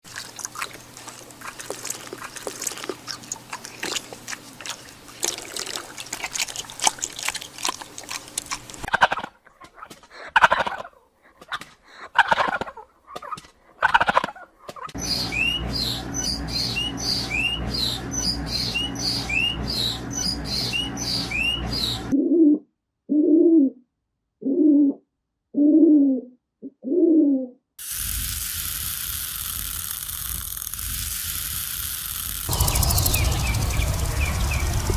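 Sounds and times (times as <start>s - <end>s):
animal calls: 12.1s - 22.1s
steady hum: 15.0s - 22.1s, 32.4s - 34.9s
birds chirping: 15.0s - 22.2s, 32.5s - 34.9s.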